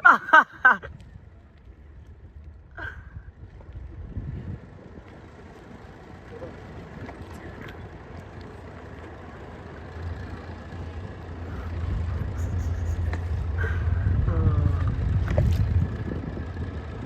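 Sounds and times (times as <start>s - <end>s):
boat engine droning: 0.0s - 17.0s
wind and water noise: 0.0s - 17.0s.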